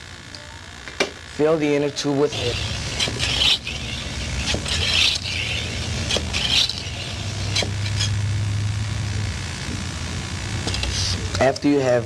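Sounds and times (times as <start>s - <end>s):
steady low hum: 0.0s - 12.0s
air pump hissing: 2.3s - 8.2s.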